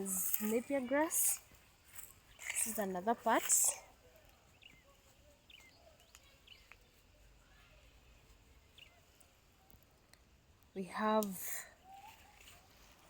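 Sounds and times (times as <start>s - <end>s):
faint bird chirps: 1.3s - 9.8s, 11.5s - 13.0s.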